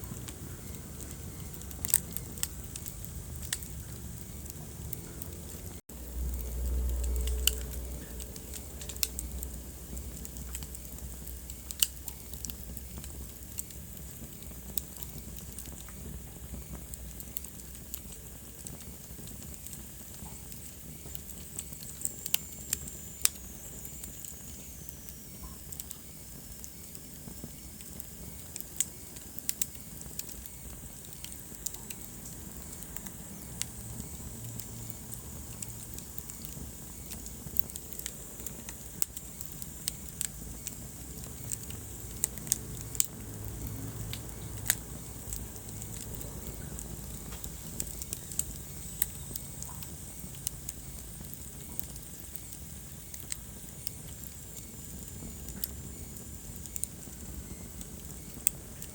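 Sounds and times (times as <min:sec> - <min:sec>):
low rumble: 0:00.0 - 0:11.4
wood fire crackling: 0:00.0 - 0:58.9.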